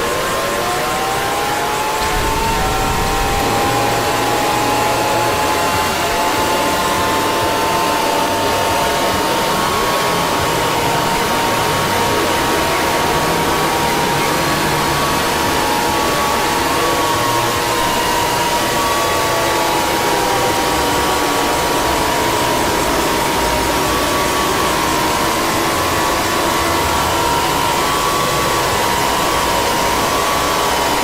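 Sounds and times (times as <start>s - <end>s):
emergency alert alarm: 0.0s - 8.6s.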